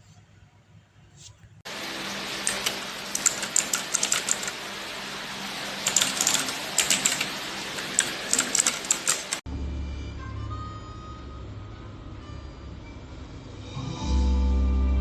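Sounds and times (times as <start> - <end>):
steady hiss: 1.7 - 9.4.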